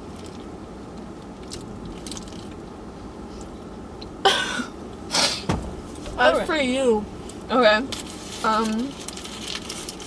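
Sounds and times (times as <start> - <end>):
person chewing food: 0.0 - 2.6
low background hum: 0.0 - 10.0
mouth clicks and crunches: 0.1 - 2.6.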